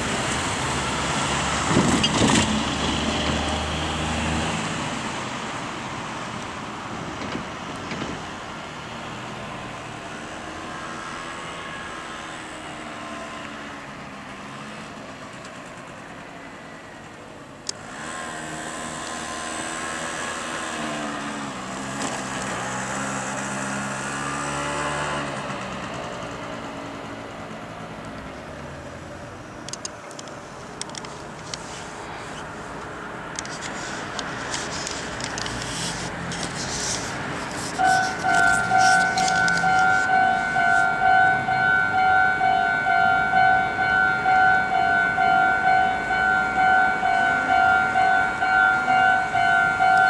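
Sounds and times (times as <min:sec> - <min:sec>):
road vehicles driving past: 0:00.0 - 0:50.0.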